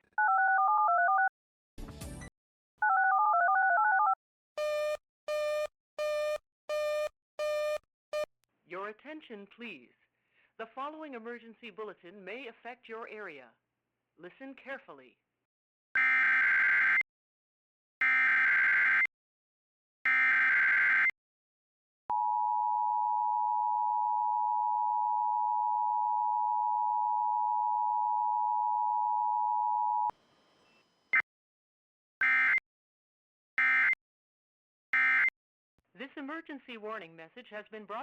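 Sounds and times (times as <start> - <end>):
steady alarm tone: 32.2 - 32.6, 35.0 - 35.3.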